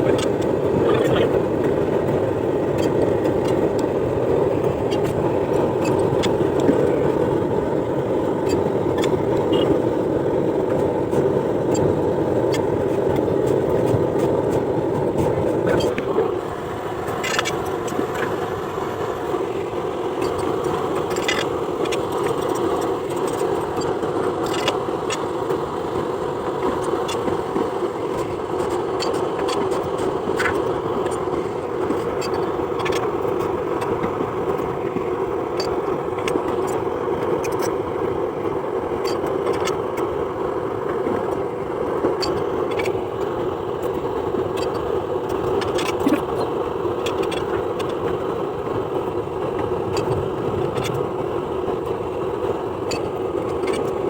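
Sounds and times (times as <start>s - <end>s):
mechanical running hum: 0.0s - 54.0s.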